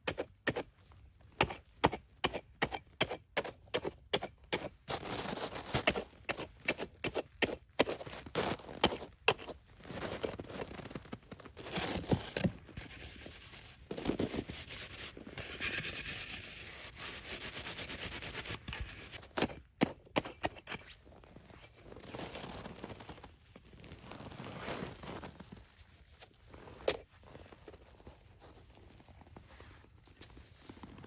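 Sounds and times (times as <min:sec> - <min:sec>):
snow and ice crunching: 0:04.9 - 0:07.0, 0:07.9 - 0:14.5.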